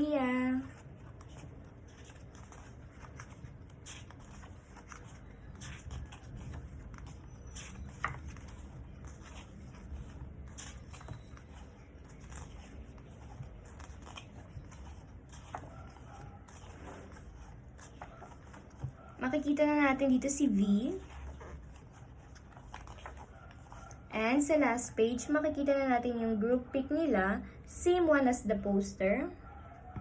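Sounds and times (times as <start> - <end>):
paper pages rustling: 0.5 - 24.0.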